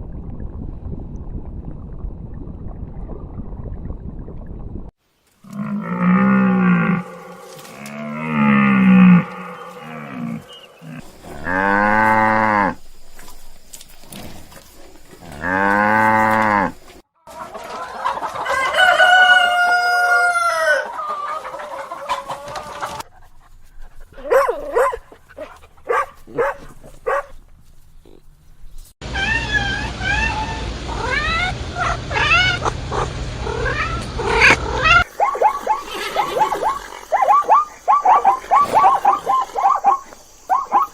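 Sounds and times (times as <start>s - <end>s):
background noise: 5.0s - 29.0s
hens clucking: 17.2s - 23.1s, 30.9s - 40.9s
rooster crowing: 18.3s - 23.0s.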